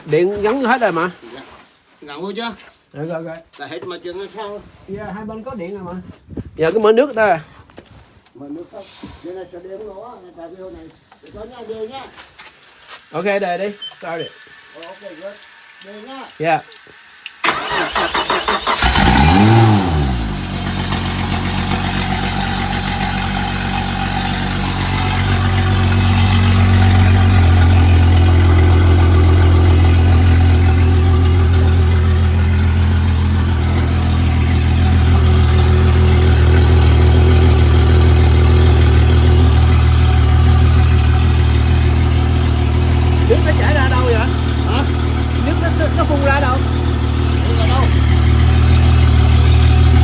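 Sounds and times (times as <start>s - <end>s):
outboard engine revving and idling: 17.4s - 50.0s.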